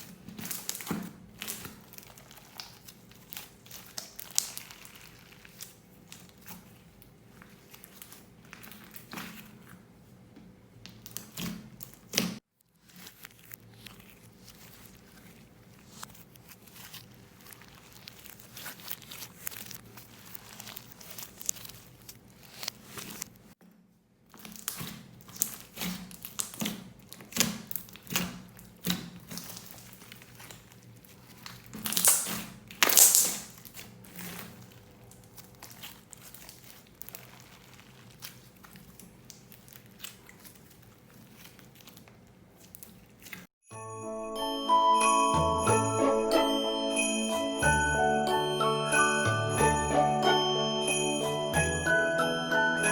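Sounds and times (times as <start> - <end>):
plastic bags crinkling: 0.0 - 9.8, 12.7 - 23.5, 24.4 - 43.5.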